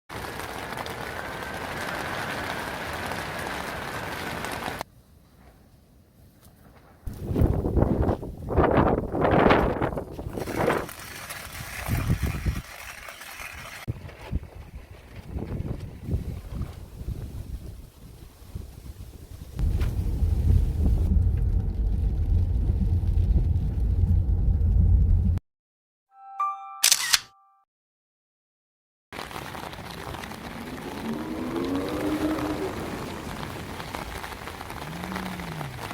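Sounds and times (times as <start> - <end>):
heavy rain falling: 0.1 - 4.8, 19.6 - 24.0, 29.2 - 35.9
strong wind buffeting microphone: 7.1 - 10.9, 11.6 - 12.6, 13.9 - 25.4
short ringing tone: 26.1 - 27.6.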